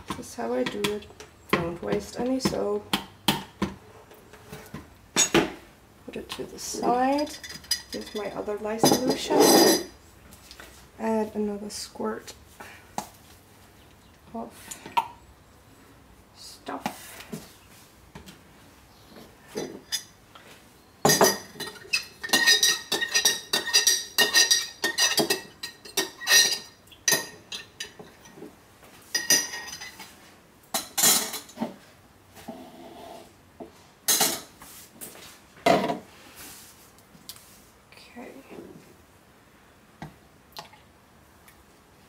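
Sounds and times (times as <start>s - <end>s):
utensil clinking against bowl: 21.1s - 28.3s.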